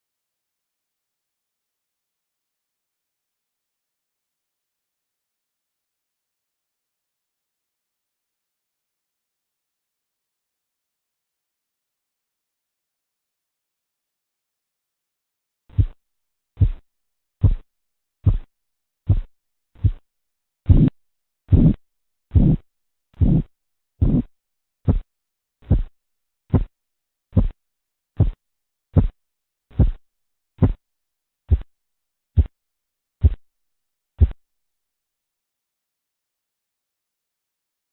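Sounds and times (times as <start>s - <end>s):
pulse taps through stethoscope: 15.7s - 16.0s, 16.6s - 16.8s, 17.4s - 17.6s, 18.2s - 18.5s, 19.1s - 20.0s, 20.7s - 22.6s, 23.2s - 24.3s, 24.9s - 25.9s, 26.5s - 26.7s, 27.4s - 27.6s, 28.2s - 28.4s, 29.0s - 30.0s, 30.6s - 30.8s, 33.2s - 33.4s, 34.2s - 34.4s.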